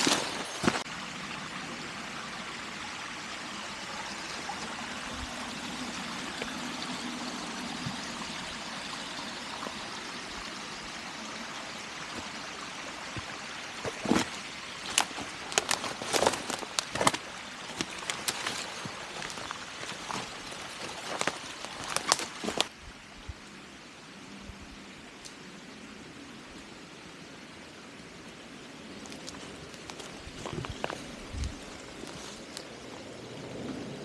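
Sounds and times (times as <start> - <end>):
mountain stream rushing: 0.0 - 22.8, 28.5 - 34.0
sharp crunches and clicks: 13.2 - 22.7, 29.0 - 32.7.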